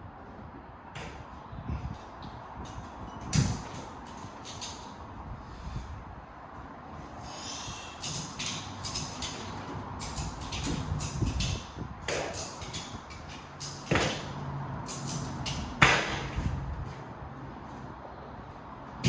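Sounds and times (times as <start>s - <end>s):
metal clicking and rattling: 2.6s - 5.1s, 8.0s - 16.4s
sharp metallic bangs: 8.0s - 16.6s.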